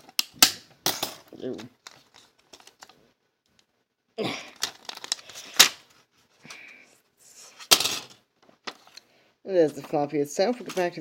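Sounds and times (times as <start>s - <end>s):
plastic casing crackling and tearing: 4.5s - 5.9s.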